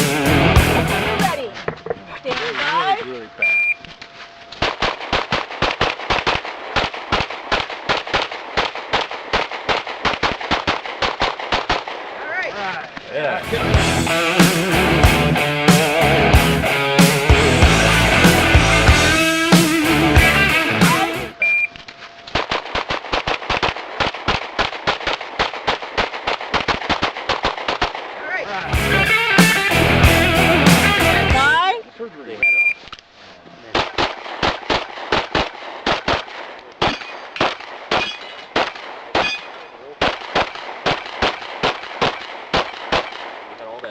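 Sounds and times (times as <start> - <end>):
electronic timer beep: 3.4 - 3.9, 21.3 - 21.8, 32.4 - 32.8
pistol shots: 4.6 - 12.2, 22.4 - 28.2, 33.7 - 43.6.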